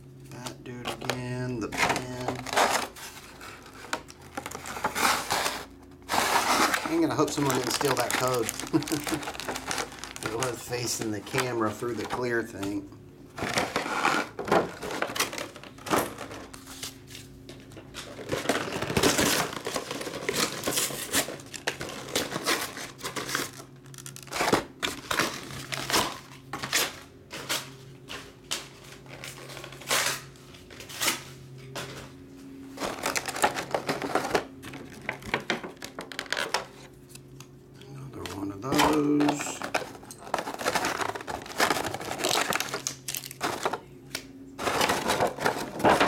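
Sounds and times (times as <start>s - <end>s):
packaging crinkling and rustling: 0.3s - 32.1s, 32.7s - 37.5s, 38.1s - 46.0s.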